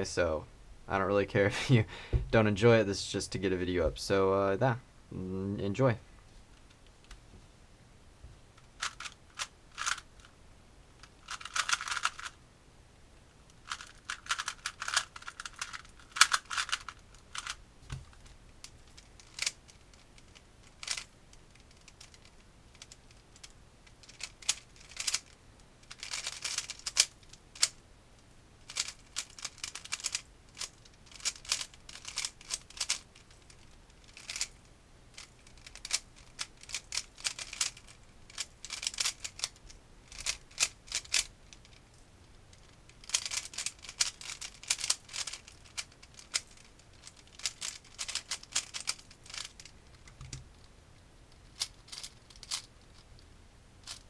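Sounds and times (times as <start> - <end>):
plastic puzzle cube clicking: 8.8 - 10.0, 11.2 - 12.4, 13.7 - 17.6, 19.0 - 27.8, 28.7 - 34.5, 35.2 - 41.8, 42.5 - 50.6, 51.4 - 52.7.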